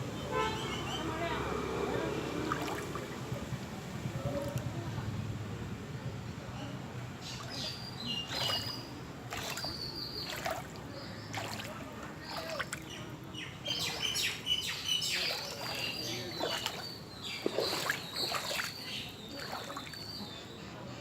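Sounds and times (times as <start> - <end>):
sharp knocks or splashes: 2.4 - 3.2, 7.4 - 12.9, 15.1 - 20.0
birds chirping: 7.1 - 20.8.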